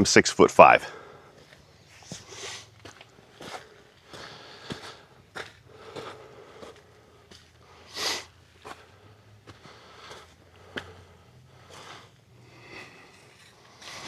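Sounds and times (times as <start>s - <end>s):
footsteps scuffing on wet ground: 1.4s - 7.6s.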